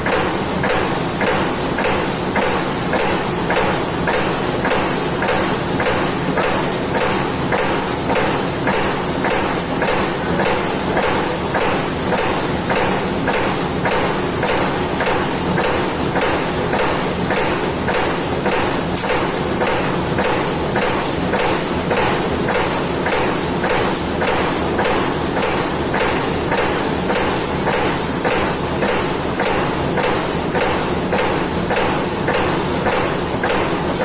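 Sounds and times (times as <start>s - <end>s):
punch press punching sheet metal: 0.0s - 34.0s.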